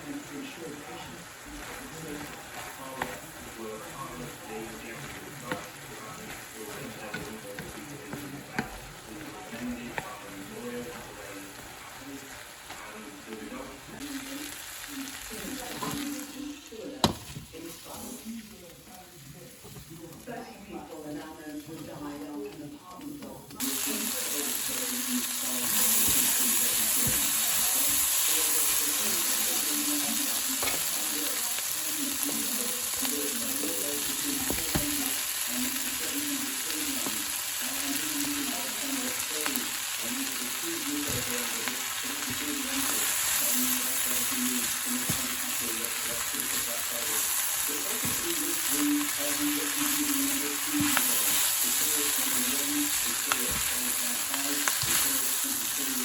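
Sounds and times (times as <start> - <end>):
food sizzling in a pan: 0.0 - 56.0
stirring clicks and scrapes: 1.2 - 13.4.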